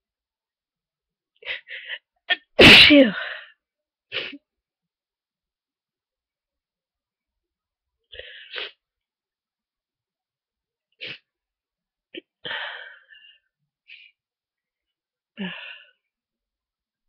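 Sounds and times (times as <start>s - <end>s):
person sneezing: 2.3s - 3.3s
person sniffling: 8.2s - 8.8s, 11.0s - 11.3s.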